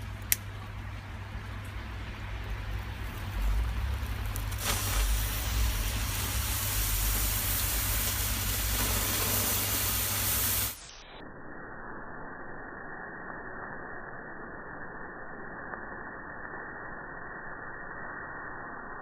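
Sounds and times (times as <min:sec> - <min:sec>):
firework hissing: 0:03.0 - 0:11.1.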